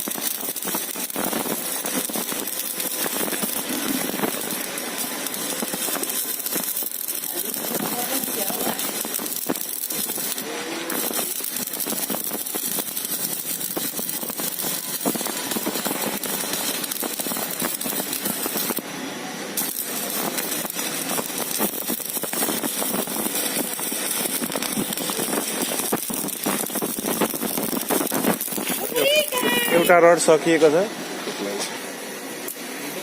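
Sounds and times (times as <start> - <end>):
welding arc crackling: 0.0 - 33.0.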